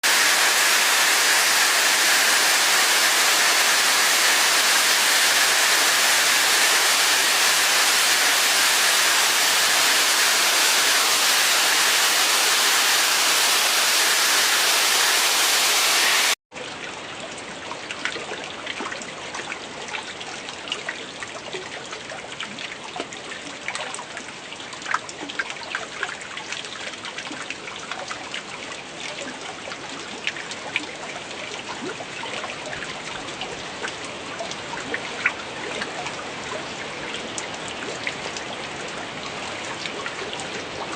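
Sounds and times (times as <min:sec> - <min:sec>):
loud rush of flowing water: 0:00.0 - 0:16.4
water trickling and dripping: 0:00.0 - 0:40.9.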